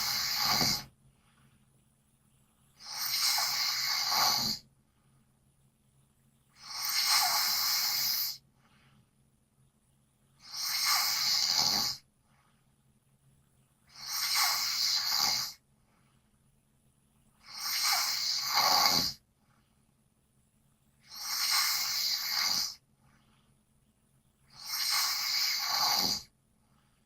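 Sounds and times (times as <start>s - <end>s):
person snoring loudly: 0.0s - 0.9s, 2.8s - 4.6s, 6.6s - 8.4s, 10.4s - 12.0s, 13.9s - 15.6s, 17.4s - 19.2s, 21.0s - 22.8s, 24.5s - 26.3s.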